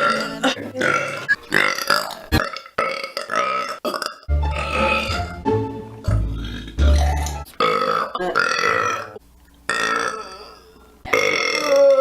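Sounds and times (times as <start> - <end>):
woman burping: 0.0 - 5.3, 6.6 - 12.0
background music: 4.3 - 7.5.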